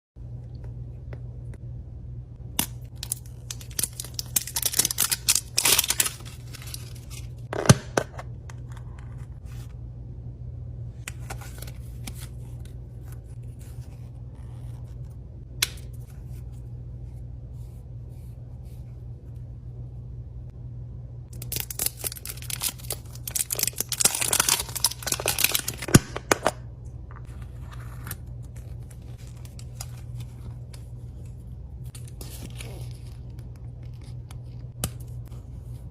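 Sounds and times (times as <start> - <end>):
steady low hum: 0.2 - 35.9
packaging crinkling and tearing: 2.6 - 7.5, 21.3 - 26.4, 27.3 - 35.2.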